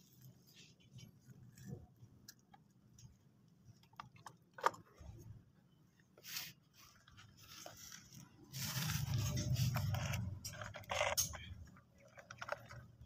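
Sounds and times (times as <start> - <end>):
toy scraping with low rumble: 6.2 - 13.0
plastic toy clicks and knocks: 9.9 - 13.0.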